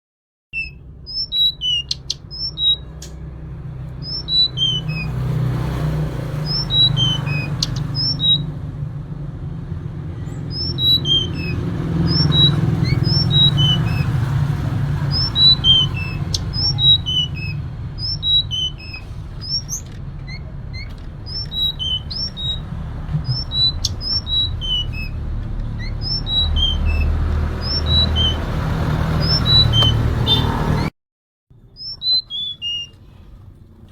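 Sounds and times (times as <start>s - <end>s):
bird calling high notes: 0.6s - 3.3s, 4.0s - 5.2s, 6.4s - 8.5s, 10.3s - 25.2s, 25.8s - 30.9s.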